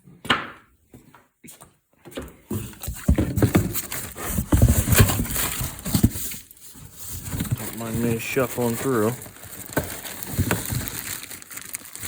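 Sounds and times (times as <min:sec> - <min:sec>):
parts clattering: 0:02.5 - 0:11.0
rustling: 0:02.6 - 0:12.0.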